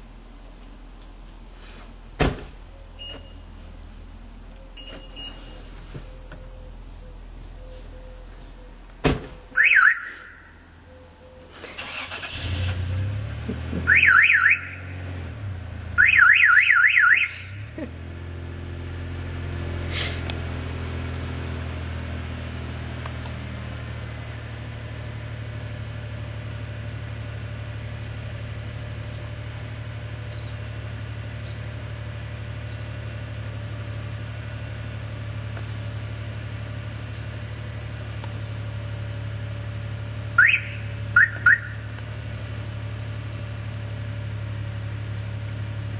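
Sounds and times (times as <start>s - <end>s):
car alarm chirps: 2.7s - 3.5s, 4.6s - 8.8s, 9.4s - 12.1s, 13.8s - 15.0s, 16.0s - 17.7s, 40.4s - 41.9s
car engine idling: 6.1s - 45.9s
car alarm warbling siren: 9.5s - 11.5s, 13.9s - 14.9s, 16.0s - 17.6s, 40.4s - 41.9s
car alarm whoop: 9.6s - 10.5s, 13.9s - 14.8s, 16.0s - 17.6s, 40.4s - 41.8s.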